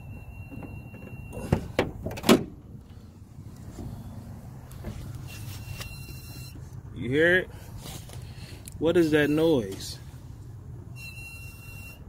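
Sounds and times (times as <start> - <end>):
high-pitched electronic beep: 10.9 - 12.0.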